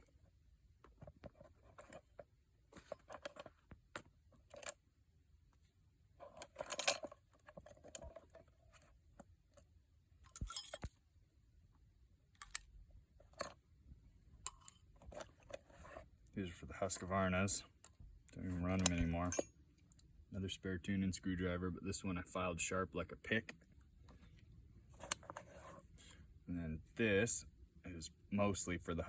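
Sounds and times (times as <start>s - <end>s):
leather pouch rustling and scraping: 1.0s - 3.7s, 6.2s - 9.2s, 14.6s - 16.2s, 24.0s - 26.2s
metal tools clinking and rattling: 6.3s - 8.2s, 10.3s - 10.9s, 18.5s - 19.8s.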